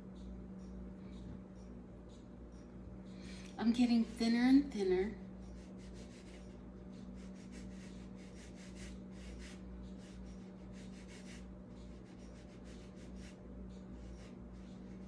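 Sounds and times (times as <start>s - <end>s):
steady low hum: 0.0s - 15.0s
paintbrush swishing on paper: 5.5s - 13.4s.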